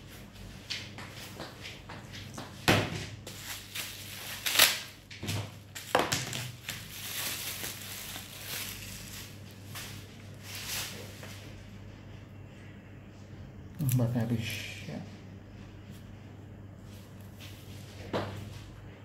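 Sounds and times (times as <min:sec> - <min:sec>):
packaging crinkling: 0:03.3 - 0:11.2
packaging cracking: 0:03.7 - 0:05.0, 0:05.8 - 0:09.4.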